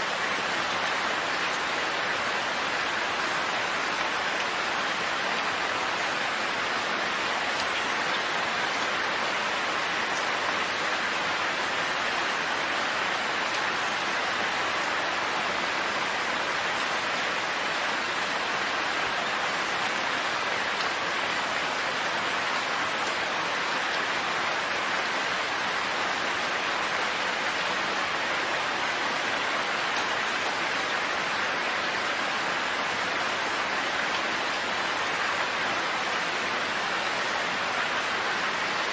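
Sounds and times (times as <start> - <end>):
dense rain falling: 0.0 - 38.9.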